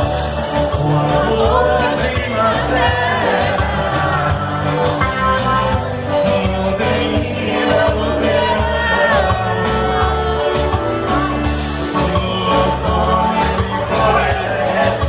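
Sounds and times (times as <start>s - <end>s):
bass line: 0.0s - 15.0s
live band music: 0.0s - 15.0s
person singing: 0.0s - 15.0s.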